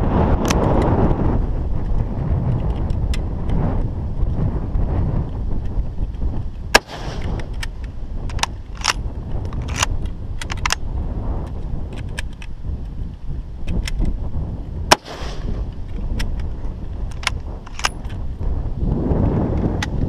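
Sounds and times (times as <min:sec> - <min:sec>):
wind rumbling on microphone: 0:00.0 - 0:20.0
gunshot: 0:06.8 - 0:07.6, 0:14.9 - 0:15.8
metallic clicks of gun handling: 0:06.8 - 0:10.8, 0:11.4 - 0:12.6, 0:13.6 - 0:14.2, 0:14.9 - 0:18.2.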